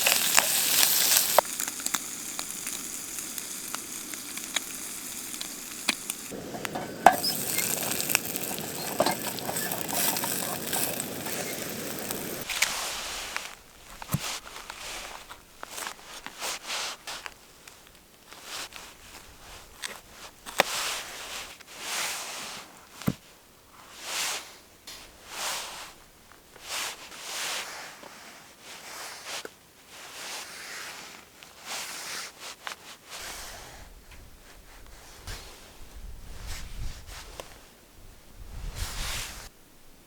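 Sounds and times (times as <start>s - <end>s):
footsteps crunching in snow: 3.9s - 17.3s.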